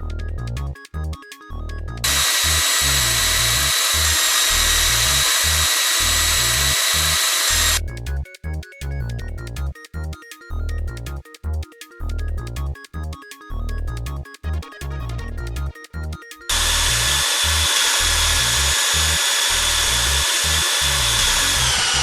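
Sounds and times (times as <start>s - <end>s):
bouncy game music: 0.0s - 2.2s, 7.8s - 17.2s.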